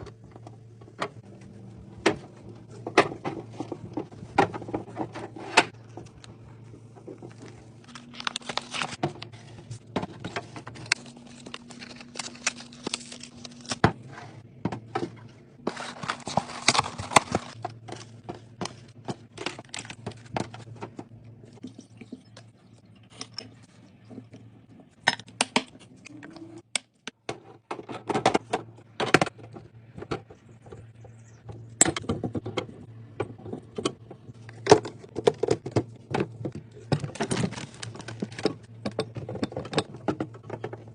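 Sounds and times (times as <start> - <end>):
steady low hum: 0.0 - 40.9.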